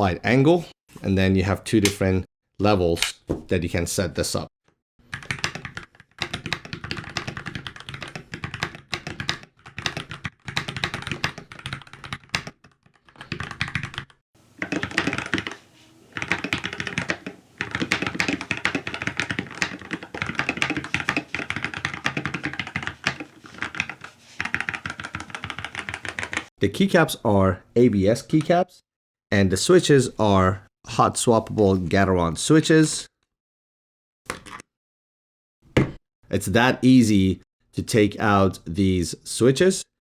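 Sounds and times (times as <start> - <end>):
typing on mechanical keyboard: 5.1 - 15.6, 16.2 - 26.5.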